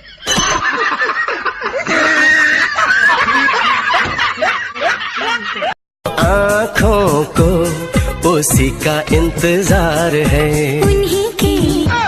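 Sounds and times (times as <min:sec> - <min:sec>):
people giggling: 0:00.0 - 0:05.8.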